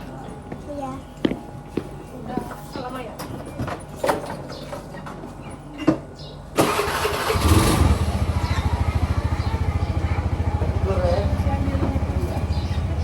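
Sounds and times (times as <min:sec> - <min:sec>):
engine starting and idling: 0:06.6 - 0:12.6.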